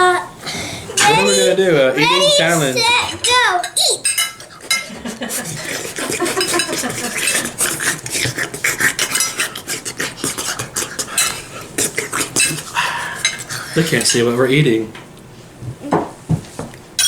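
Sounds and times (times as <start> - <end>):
cutlery clinking on plates: 3.1 - 5.0, 6.3 - 7.5, 9.0 - 9.5, 12.4 - 14.2.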